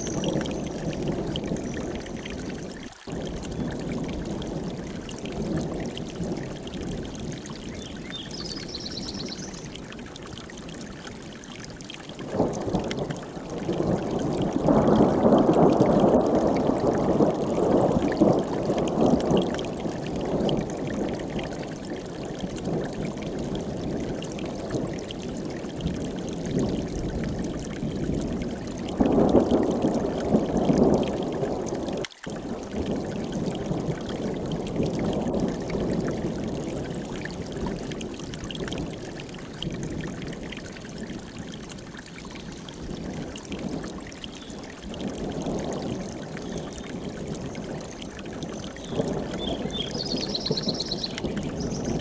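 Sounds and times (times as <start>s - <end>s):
rolling thunder: 0.0s - 7.8s, 12.2s - 31.9s, 44.8s - 52.0s
stream rushing: 0.0s - 52.0s.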